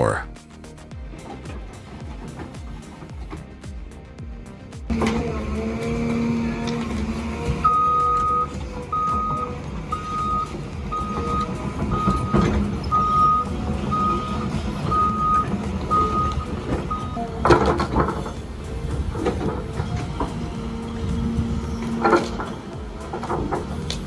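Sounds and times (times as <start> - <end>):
diesel engine running: 0.6 - 24.0
backup alarm beeping: 7.6 - 17.4.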